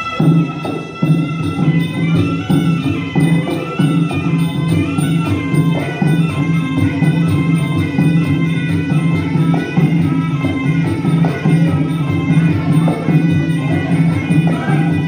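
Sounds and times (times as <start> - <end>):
steady drum beat: 0.0 - 15.0.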